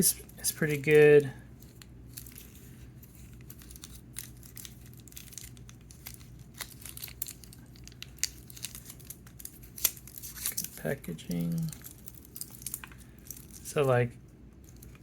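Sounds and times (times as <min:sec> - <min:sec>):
plastic packaging crinkling: 0:00.0 - 0:15.0.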